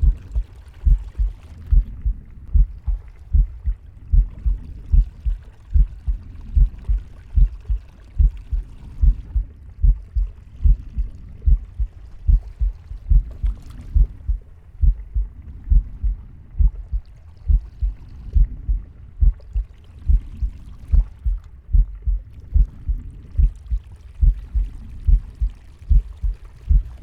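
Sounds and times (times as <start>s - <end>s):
heartbeat thumps: 0.0s - 27.0s.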